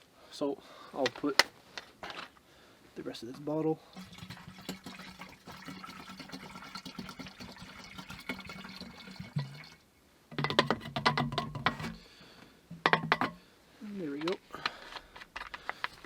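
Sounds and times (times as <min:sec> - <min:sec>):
oil pouring into lantern: 0:03.9 - 0:09.9
clinks and knocks: 0:10.3 - 0:12.0, 0:12.7 - 0:13.4.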